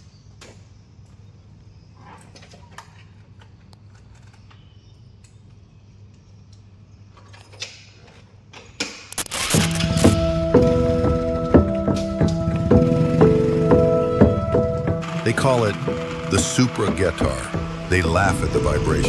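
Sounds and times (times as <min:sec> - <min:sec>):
motorcycle engine idling: 0:09.5 - 0:19.0
clattering knocks: 0:09.6 - 0:19.0.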